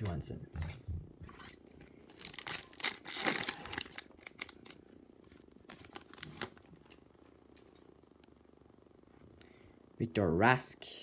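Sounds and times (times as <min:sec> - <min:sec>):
wrapper tearing and crinkling: 0:02.1 - 0:07.7.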